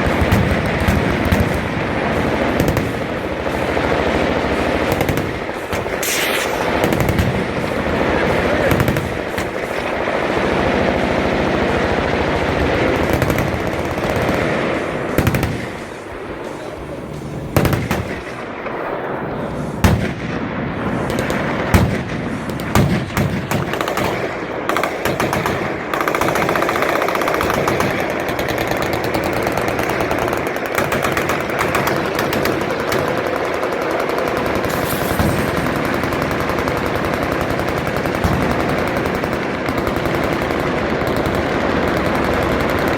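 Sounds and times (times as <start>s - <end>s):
machine guns firing: 0.0s - 42.9s
loud single gunshots: 5.0s - 7.4s.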